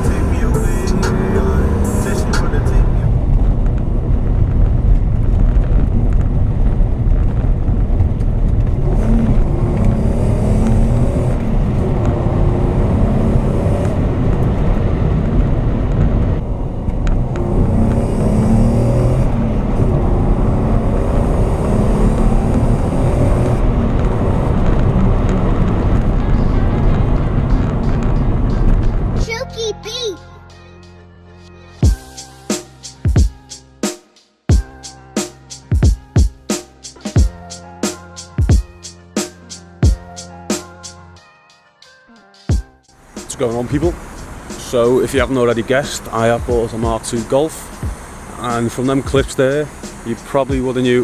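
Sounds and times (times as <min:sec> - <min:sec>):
car engine revving while driving: 0:00.0 - 0:29.2, 0:43.3 - 0:51.0.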